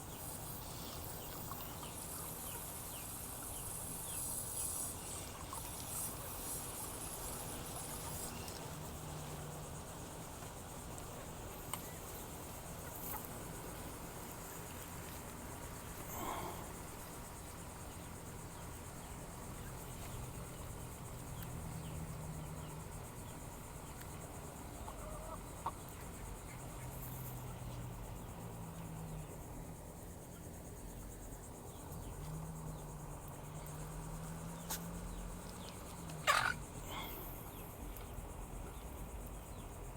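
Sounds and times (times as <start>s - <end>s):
insects chirping: 0.0s - 39.9s
fowl call: 36.2s - 36.6s.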